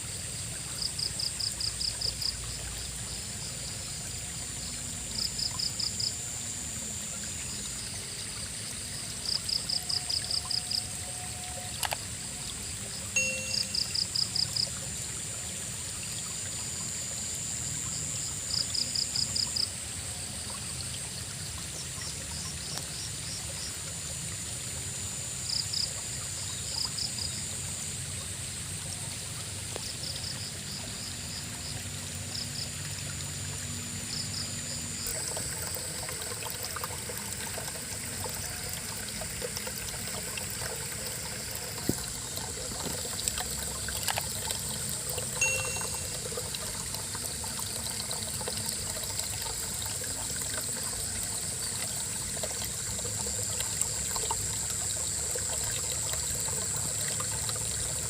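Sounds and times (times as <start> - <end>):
river water flowing: 0.0 - 58.0
frogs trilling: 0.6 - 14.8, 29.7 - 58.0
high-pitched drone: 13.2 - 14.0, 45.4 - 46.5.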